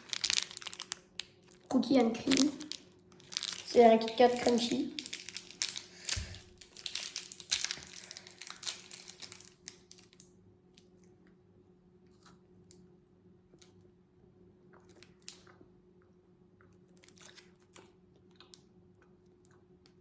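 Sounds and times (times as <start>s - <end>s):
plastic wrapper crinkling and tearing: 0.0s - 11.0s, 16.9s - 18.6s.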